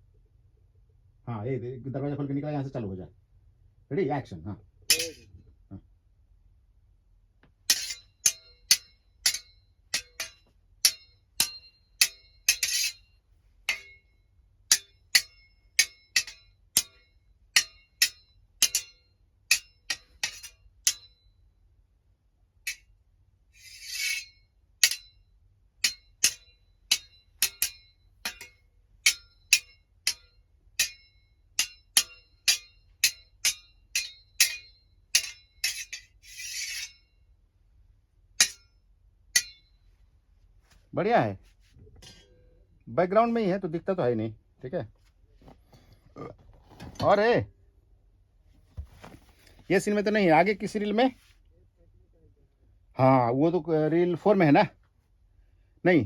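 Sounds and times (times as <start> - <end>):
metal swords clashing: 4.9 - 5.3, 7.7 - 13.1, 13.7 - 14.1, 14.7 - 21.2, 23.6 - 25.2, 25.8 - 37.1, 38.4 - 38.7, 39.4 - 39.7
blade scraping along blade: 23.6 - 24.3, 35.6 - 37.0.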